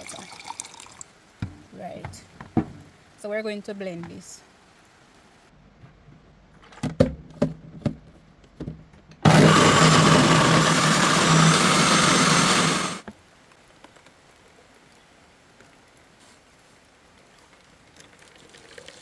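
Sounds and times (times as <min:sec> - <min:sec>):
knocks and clicks: 0:01.4 - 0:03.0
electric blender running: 0:09.2 - 0:13.0.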